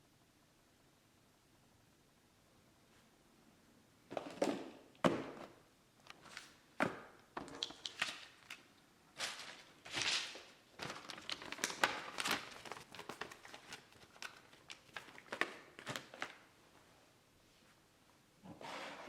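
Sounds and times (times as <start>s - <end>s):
packaging crinkling and rustling: 7.4s - 16.5s.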